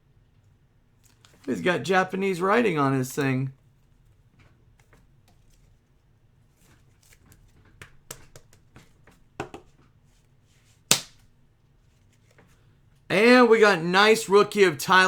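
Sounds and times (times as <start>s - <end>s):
card snapping: 10.9s - 11.2s.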